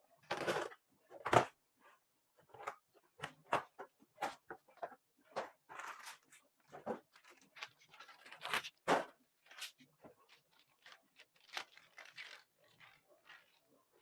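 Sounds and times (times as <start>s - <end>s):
plastic boxes clicking and knocking: 0.2s - 1.6s, 2.4s - 7.6s
packaging rustle: 5.7s - 14.0s.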